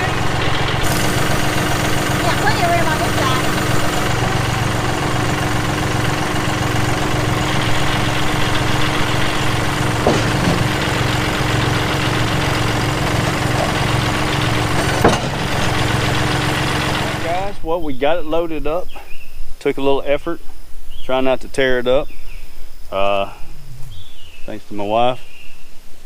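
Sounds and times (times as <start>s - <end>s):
engine idling: 0.0s - 17.9s.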